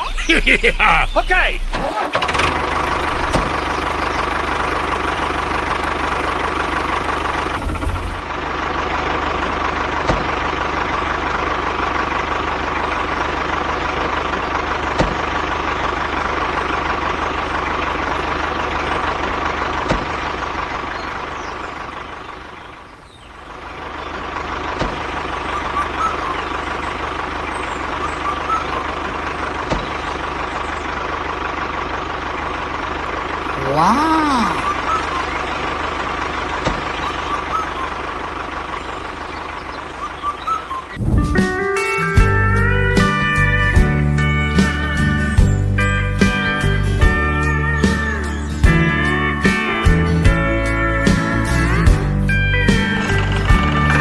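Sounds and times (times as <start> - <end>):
truck engine running: 0.0 - 22.6
constant engine whine: 0.0 - 33.4.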